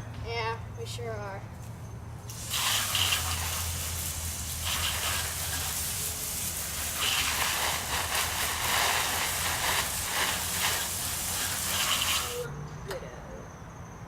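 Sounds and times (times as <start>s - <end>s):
garden hose spraying water: 2.3s - 12.5s.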